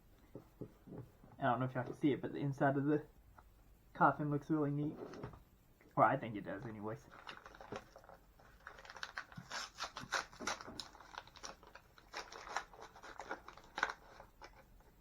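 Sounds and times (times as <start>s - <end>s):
toy packaging being torn open: 7.0s - 14.6s.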